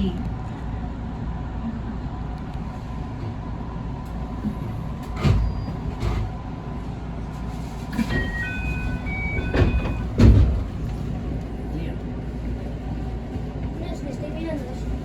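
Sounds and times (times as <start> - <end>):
train running low rumble: 0.0 - 15.0
clunks: 7.9 - 11.0.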